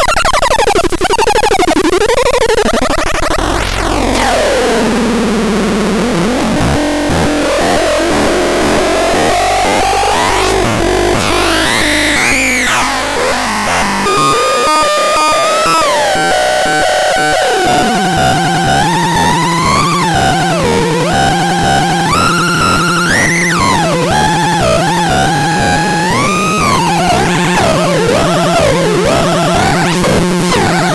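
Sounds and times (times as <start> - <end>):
steady synthesizer tone: 3.6 - 13.7
gliding synthesizer tones: 6.0 - 30.9.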